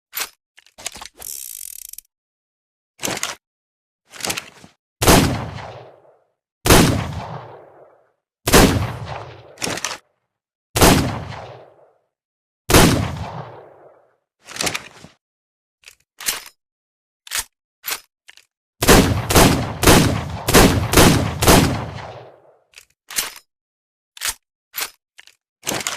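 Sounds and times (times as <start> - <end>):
revolver gunshots: 5.0 - 6.1, 6.7 - 9.6, 10.8 - 11.9, 12.7 - 14.0, 18.8 - 22.5.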